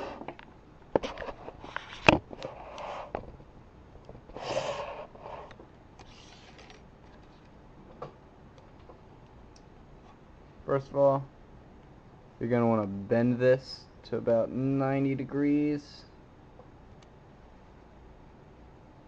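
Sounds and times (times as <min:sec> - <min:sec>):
rustling and scraping: 0:00.0 - 0:03.5, 0:04.1 - 0:08.0.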